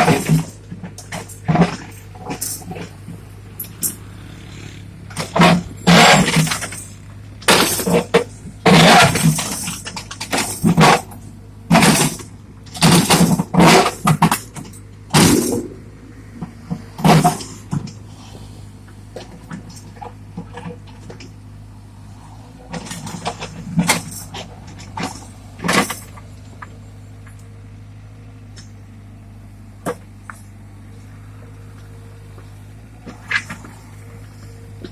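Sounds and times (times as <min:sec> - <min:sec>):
excavator engine running: 0:00.0 - 0:34.9
bucket clattering and scraping: 0:01.1 - 0:11.1, 0:15.2 - 0:16.0.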